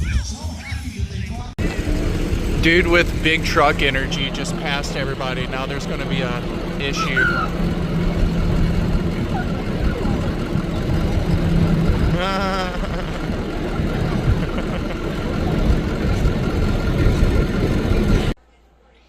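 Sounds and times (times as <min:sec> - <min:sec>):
car engine and road noise: 0:01.6 - 0:18.4
short warbling voice-like sound: 0:06.9 - 0:07.6.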